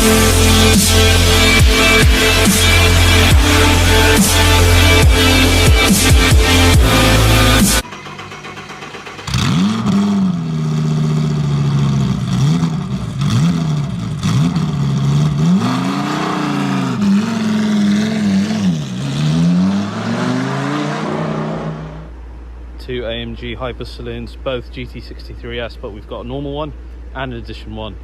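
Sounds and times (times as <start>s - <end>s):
car engine revving: 0.0s - 22.3s.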